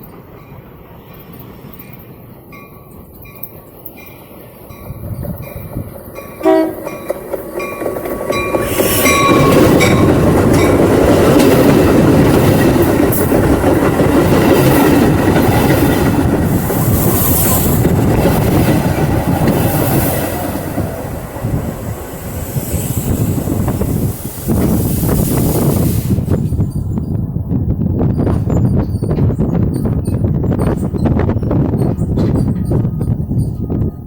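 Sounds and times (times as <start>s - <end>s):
train wheels rumbling on rails: 0.0s - 34.0s
train horn blast: 6.4s - 7.0s.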